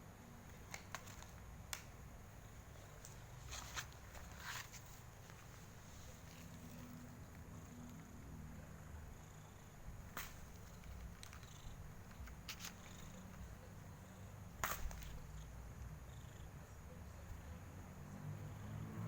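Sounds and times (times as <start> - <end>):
cat purring: 2.4 - 19.0.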